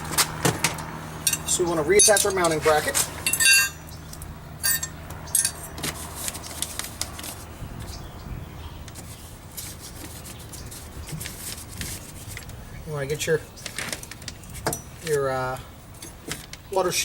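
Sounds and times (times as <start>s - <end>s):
metal clinks and rattles: 1.2s - 3.8s, 4.6s - 5.7s.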